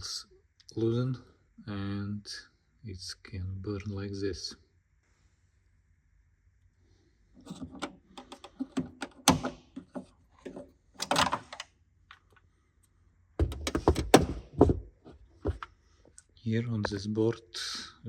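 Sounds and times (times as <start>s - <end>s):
plastic clicks and knocks: 7.4s - 11.7s, 13.4s - 14.9s.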